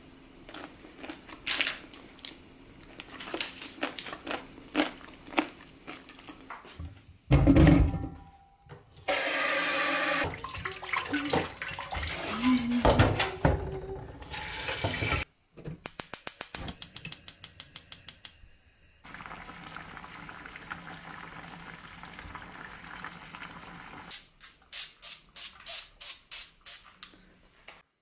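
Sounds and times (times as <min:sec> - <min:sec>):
running tap water: 0:09.1 - 0:12.8, 0:14.2 - 0:15.3, 0:19.1 - 0:24.1.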